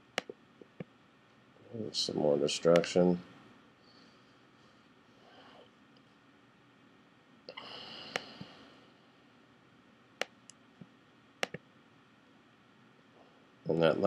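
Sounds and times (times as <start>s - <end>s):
mouse clicks: 11.4s - 11.6s.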